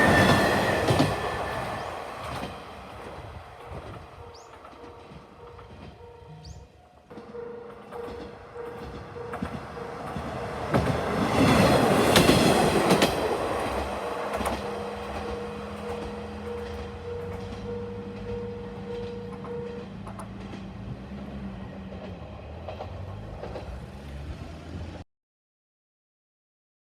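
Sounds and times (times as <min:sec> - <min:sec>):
train wheels clattering: 0:00.0 - 0:24.2
railcar engine hum: 0:00.0 - 0:25.0
level crossing warning bell: 0:03.6 - 0:12.1, 0:14.0 - 0:20.3.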